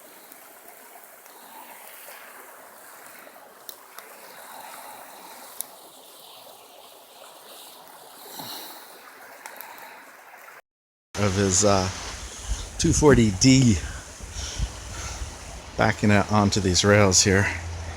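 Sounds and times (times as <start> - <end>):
steady watery hiss: 0.0 - 10.6, 11.2 - 17.9.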